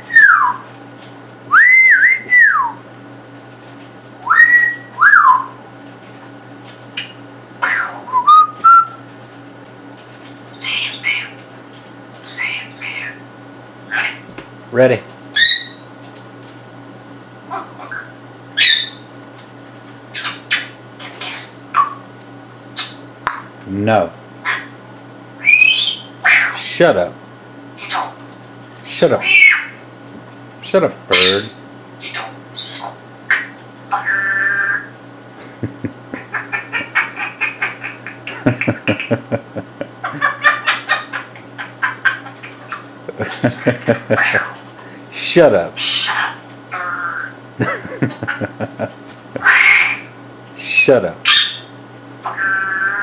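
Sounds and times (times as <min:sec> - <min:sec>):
parrot squawking: 0:00.1 - 0:00.6, 0:04.2 - 0:05.5, 0:07.0 - 0:09.0, 0:10.5 - 0:11.4, 0:12.2 - 0:13.3, 0:13.9 - 0:14.3, 0:15.4 - 0:15.9, 0:17.5 - 0:19.1, 0:20.1 - 0:22.0, 0:22.8 - 0:23.5, 0:24.4 - 0:24.8, 0:25.4 - 0:26.8, 0:27.8 - 0:28.2, 0:28.9 - 0:29.8, 0:31.1 - 0:35.0, 0:36.2 - 0:39.1, 0:40.0 - 0:43.0, 0:43.9 - 0:44.6, 0:45.2 - 0:47.4, 0:49.4 - 0:53.0.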